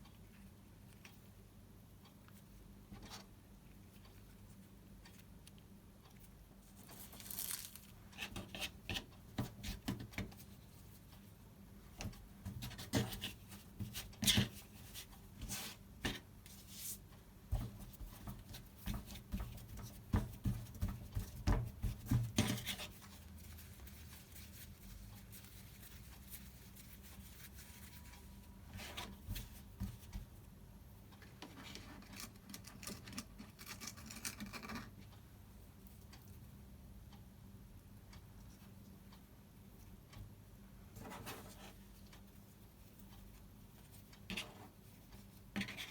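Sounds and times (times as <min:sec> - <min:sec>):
hands tapping kitchen things: 0:17.5 - 0:23.0.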